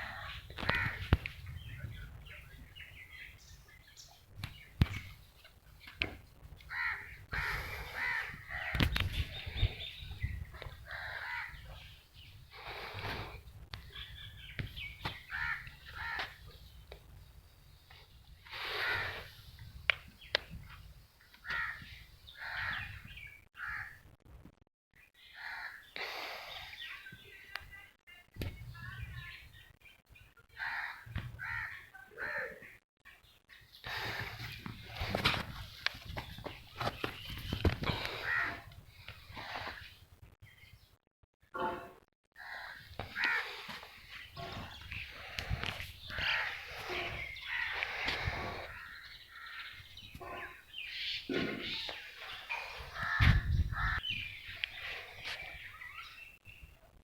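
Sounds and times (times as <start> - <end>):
crows cawing: 0.0 - 1.2, 6.7 - 9.0, 10.8 - 11.8, 15.2 - 16.4, 18.6 - 19.4, 21.4 - 23.0, 23.6 - 24.0, 25.4 - 25.9, 30.6 - 32.6, 37.9 - 38.7, 42.4 - 50.5, 51.6 - 55.6.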